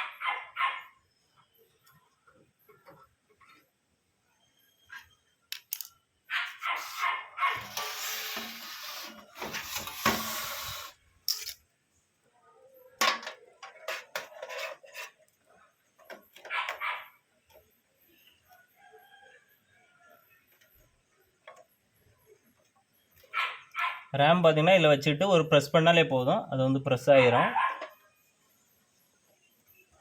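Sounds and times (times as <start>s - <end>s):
metal parts and screws clicking: 5.5s - 11.7s
scraping and rubbing: 6.4s - 11.6s, 13.7s - 15.6s.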